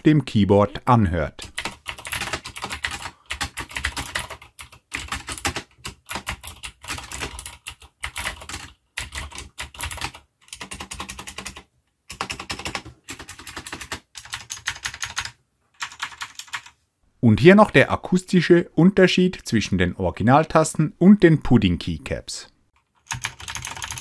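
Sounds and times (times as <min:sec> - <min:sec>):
mechanical keyboard typing: 0:01.4 - 0:16.7, 0:22.9 - 0:24.0.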